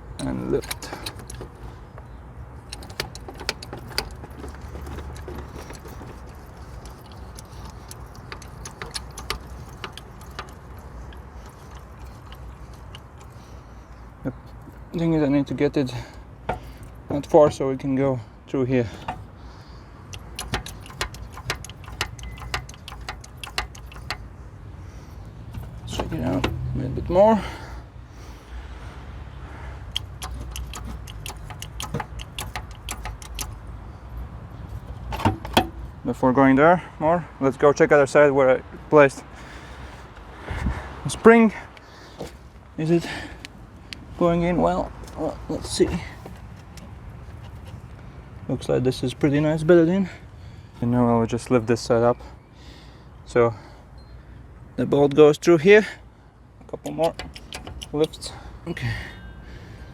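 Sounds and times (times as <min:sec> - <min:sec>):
hydraulic jack metallic clicks: 0:00.0 - 0:01.6, 0:02.6 - 0:13.4, 0:20.0 - 0:24.3, 0:25.5 - 0:26.7, 0:29.8 - 0:33.7, 0:35.1 - 0:35.8, 0:56.8 - 0:58.4.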